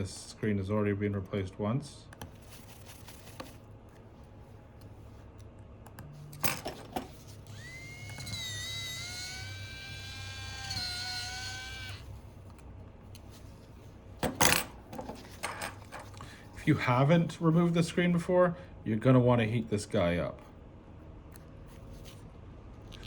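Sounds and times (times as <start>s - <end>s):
electric screwdriver whining: 7.4s - 12.2s.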